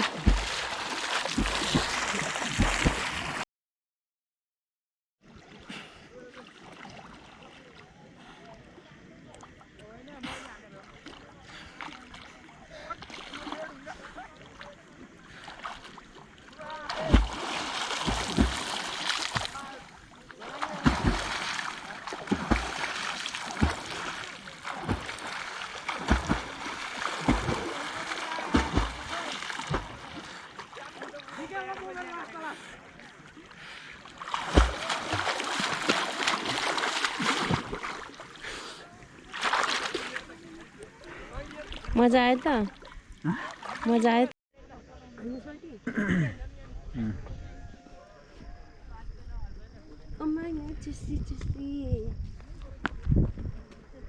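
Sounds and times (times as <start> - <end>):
low thuds in water: 0.0 - 3.4, 16.8 - 31.2, 34.2 - 38.3
water lapping: 0.0 - 3.4, 5.3 - 44.3
water splashing and sloshing: 0.0 - 3.4, 5.2 - 44.3.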